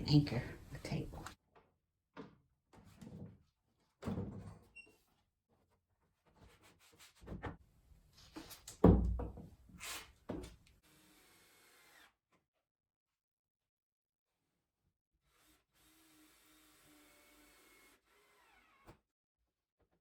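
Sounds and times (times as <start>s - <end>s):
wooden table frame knocks and thumps: 8.8s - 9.5s.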